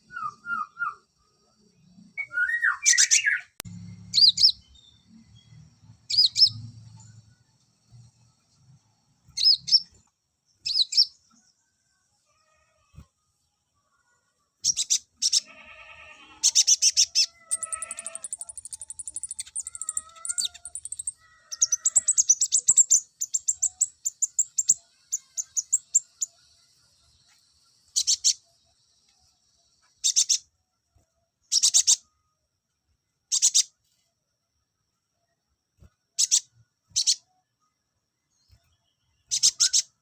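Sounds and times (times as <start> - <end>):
bird whistled notes: 0.0 - 1.0
songbird chirping trills: 0.0 - 40.0.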